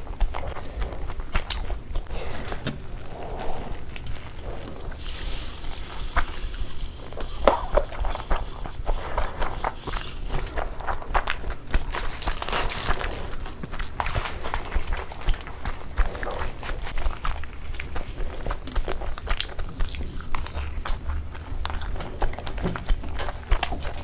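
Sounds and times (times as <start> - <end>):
chewing food close up: 0.0 - 24.0
wrapper rustling: 2.4 - 11.0, 11.8 - 13.4.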